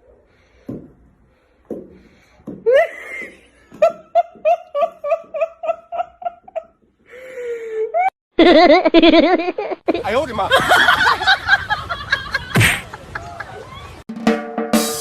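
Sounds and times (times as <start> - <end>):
high-pitched laughing: 7.9 - 9.9.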